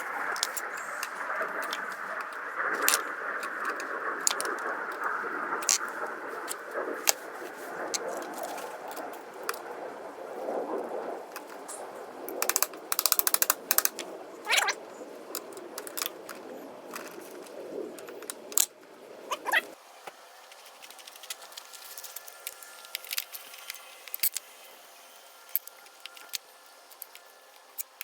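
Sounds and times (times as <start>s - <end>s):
ratchet clicks: 12.4s - 14.0s.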